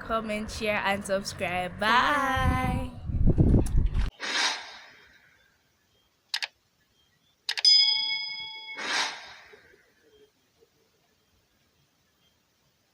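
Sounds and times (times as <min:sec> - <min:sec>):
quick clicks: 0:06.3 - 0:06.6
bell ringing: 0:07.6 - 0:08.8.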